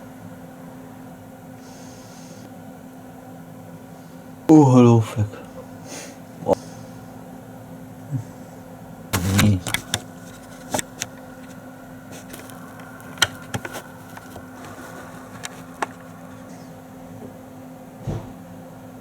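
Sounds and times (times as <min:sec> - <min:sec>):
low hum: 0:09.0 - 0:18.6
sharp clicks and knocks: 0:12.2 - 0:16.5.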